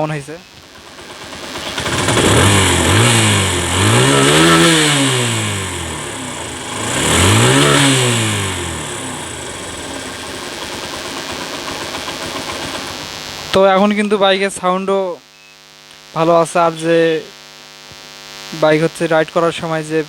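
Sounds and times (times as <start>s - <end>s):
motorcycle engine revving and idling: 0.5s - 13.7s.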